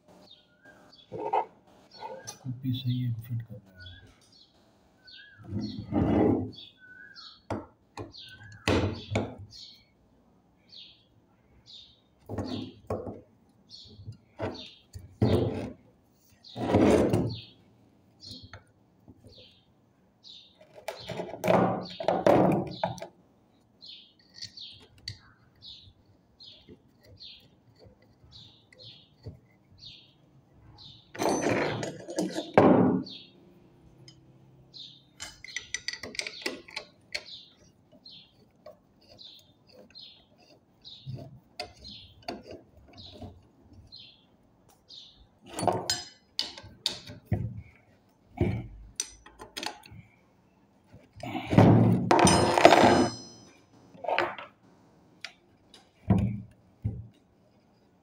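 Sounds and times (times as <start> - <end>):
small bird chirping: 0.1 - 5.9, 6.5 - 9.9, 23.8 - 31.1, 32.4 - 33.4, 34.0 - 45.3
metal knocks and clunks: 51.4 - 54.5.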